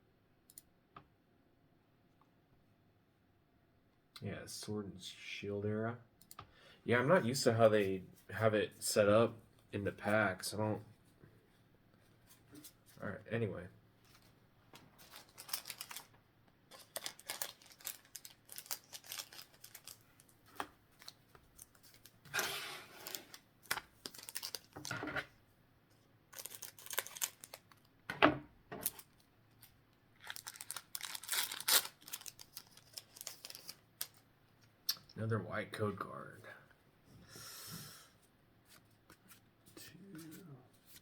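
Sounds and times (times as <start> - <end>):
foil wrapper tearing and crinkling: 15.0 - 16.1, 16.7 - 20.4, 23.0 - 24.9, 26.3 - 27.8, 28.8 - 34.2.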